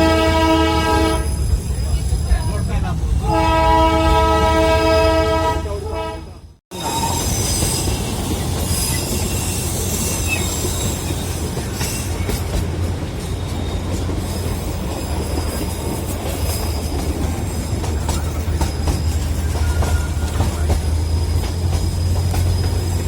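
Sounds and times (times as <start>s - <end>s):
train horn: 0.0s - 1.4s, 3.2s - 7.3s
train rumbling on track: 0.0s - 23.0s
wheel squeal: 6.7s - 23.0s
rail clicks: 6.8s - 23.0s.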